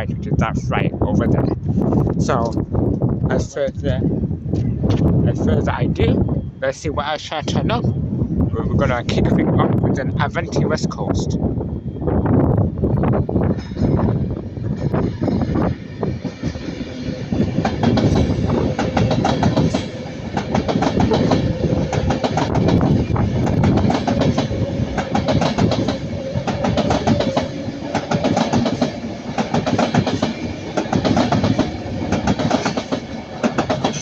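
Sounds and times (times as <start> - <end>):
train wheels clicking over rail joints: 13.5 - 34.0.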